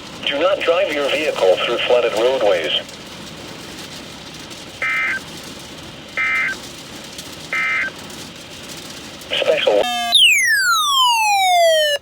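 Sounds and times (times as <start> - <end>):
buzzing digital tone bursts: 9.8 - 12.0.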